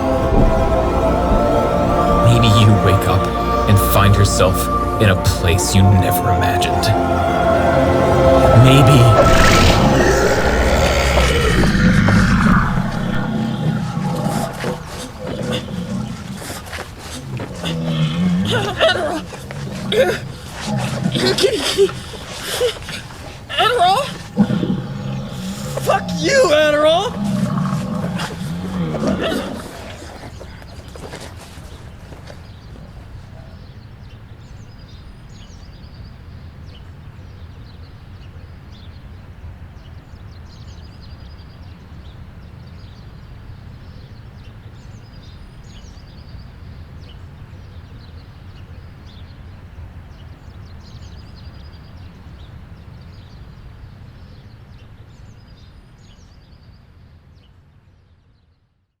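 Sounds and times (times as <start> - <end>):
low rumble: 0.0 - 15.0.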